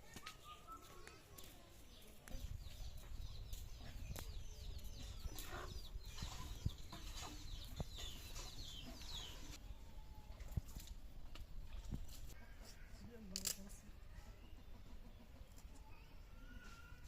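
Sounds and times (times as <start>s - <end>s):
chickens chirping: 0.4s - 9.6s, 14.2s - 16.1s.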